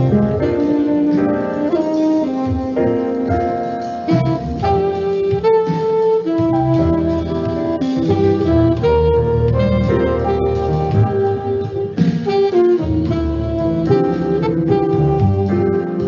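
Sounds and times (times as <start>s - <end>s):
instrumental jazz music: 0.0s - 16.0s.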